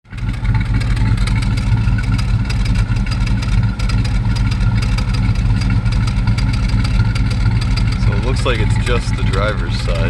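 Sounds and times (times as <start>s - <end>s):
engine idling with misfire: 0.0s - 10.0s.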